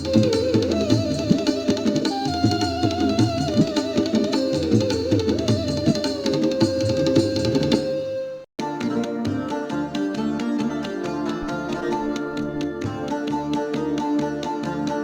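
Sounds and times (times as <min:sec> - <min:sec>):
wavering melody: 0:00.0 - 0:15.0
plucked strings: 0:08.6 - 0:15.0
hand drum strokes: 0:10.4 - 0:14.7.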